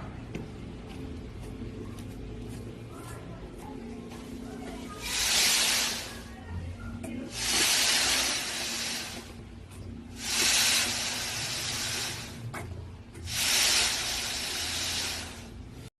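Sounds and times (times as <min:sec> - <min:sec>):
steady low hum: 0:00.0 - 0:15.9
concrete pump hissing rush: 0:04.9 - 0:06.4, 0:07.3 - 0:09.4, 0:10.1 - 0:12.5, 0:13.2 - 0:15.9.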